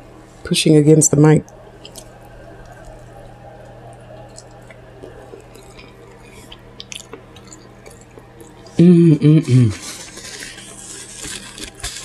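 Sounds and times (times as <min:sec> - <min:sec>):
low hum: 0:00.0 - 0:11.6
chewing with mouth clicks: 0:01.5 - 0:08.8.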